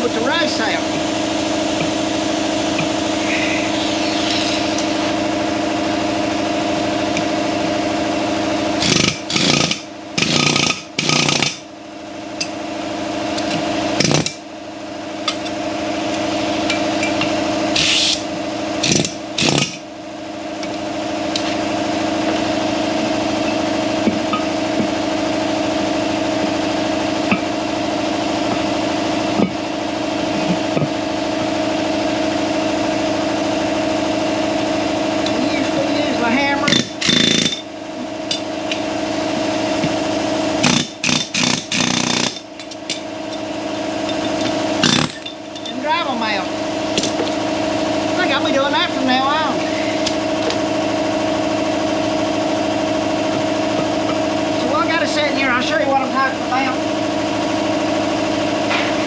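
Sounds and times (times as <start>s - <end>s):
steady machine hum: 0.0s - 59.0s
power tool bursts: 8.8s - 11.6s, 14.0s - 14.4s, 17.7s - 19.8s, 36.6s - 37.7s, 40.6s - 42.5s, 44.8s - 45.3s.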